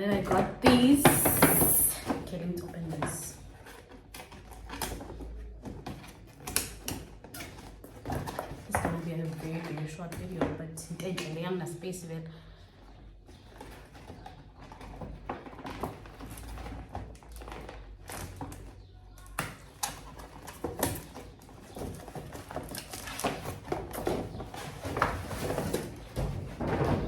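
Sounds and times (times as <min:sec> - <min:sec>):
gift packaging rustling: 0:19.6 - 0:27.0.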